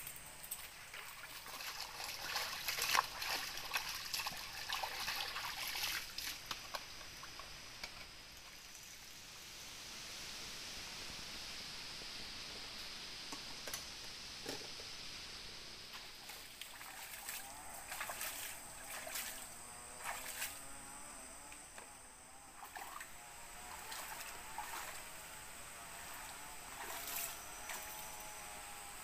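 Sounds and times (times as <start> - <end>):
rain hiss: 0.0 - 29.0
water splashing in a container: 0.9 - 7.4, 16.0 - 20.7, 22.5 - 25.2, 26.0 - 28.0.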